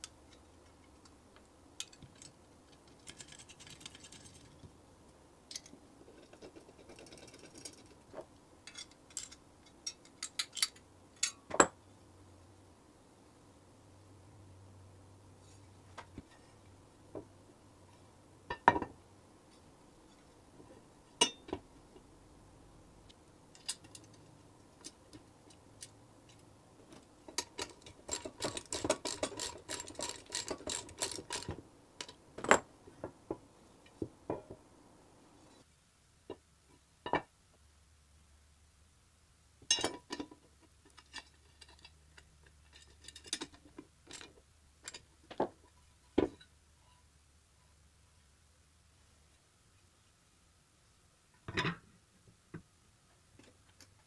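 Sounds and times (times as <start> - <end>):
metal tools clinking: 8.7 - 11.7
rapid clicking and rattling: 27.4 - 31.6.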